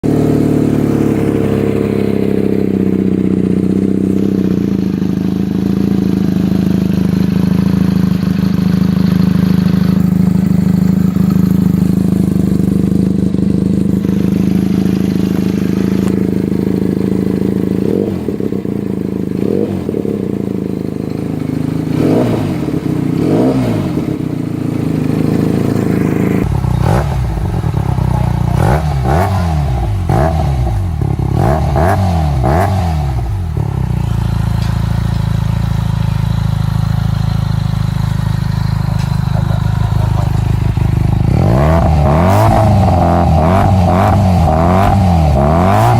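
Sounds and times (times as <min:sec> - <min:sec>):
motorcycle engine idling and revving: 0:00.0 - 0:45.9.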